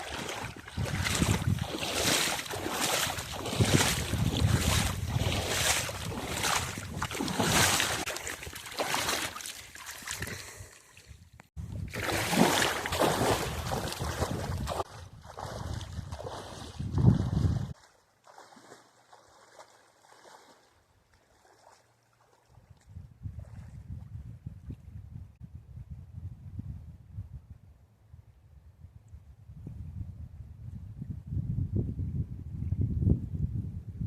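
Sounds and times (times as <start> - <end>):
wind rumbling on microphone: 0.0 - 8.6, 10.0 - 17.8, 22.5 - 34.0
water splashing rhythmically: 0.0 - 11.2, 11.8 - 23.6.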